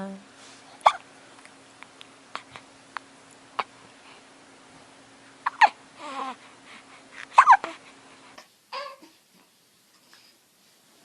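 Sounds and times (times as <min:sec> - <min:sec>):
baby hiccupping: 0:00.8 - 0:01.0, 0:05.4 - 0:06.4, 0:07.3 - 0:07.8, 0:08.7 - 0:09.2
baby voiced sound: 0:08.7 - 0:09.2.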